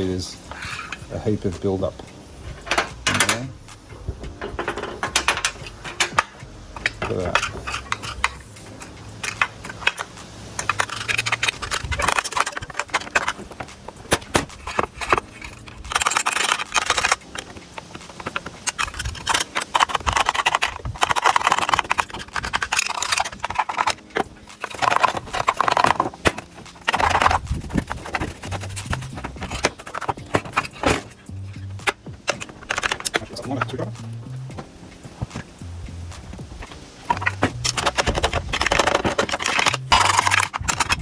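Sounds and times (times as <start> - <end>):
sharp clicks and knocks: 0.9 - 41.0
scraping sawdust from saw housing: 5.0 - 34.3.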